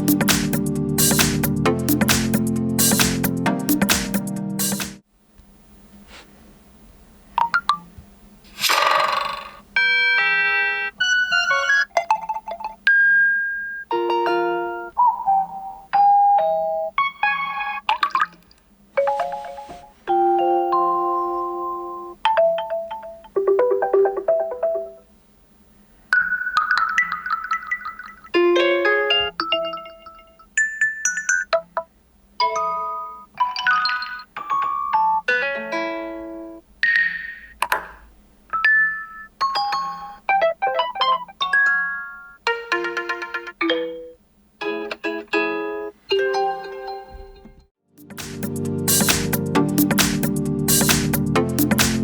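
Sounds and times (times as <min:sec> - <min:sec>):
phone notification chimes: 0:19.0 - 0:25.0.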